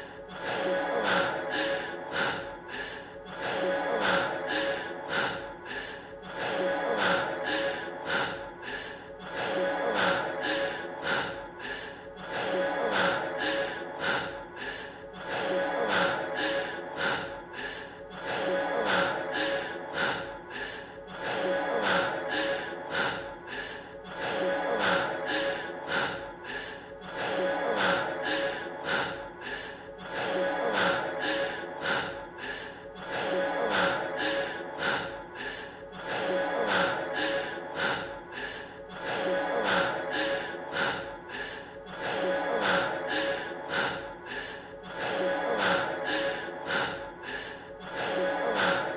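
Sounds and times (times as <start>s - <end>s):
man breathing heavily and gasping: 0.0s - 48.9s.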